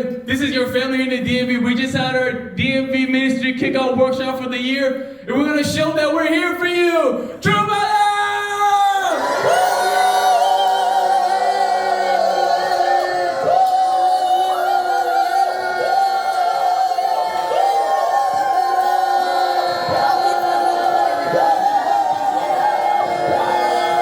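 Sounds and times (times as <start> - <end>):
group of voices singing: 9.4 - 24.0.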